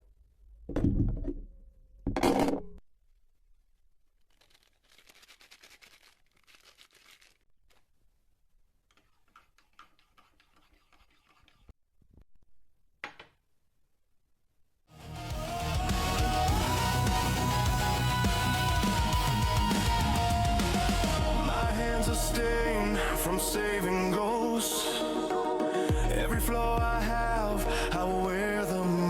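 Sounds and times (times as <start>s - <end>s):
faint scraping and rustling: 8.9s - 11.7s.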